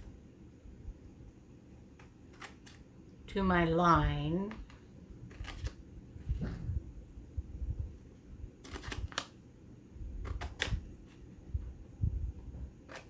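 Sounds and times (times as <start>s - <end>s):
scissors cutting paper: 1.9s - 2.9s, 5.2s - 5.8s, 8.6s - 9.4s, 10.2s - 10.9s, 12.8s - 13.0s
paper being handled: 5.2s - 6.4s.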